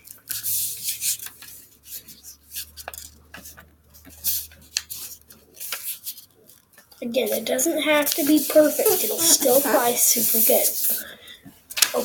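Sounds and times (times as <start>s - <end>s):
paper being folded: 0.0s - 11.1s.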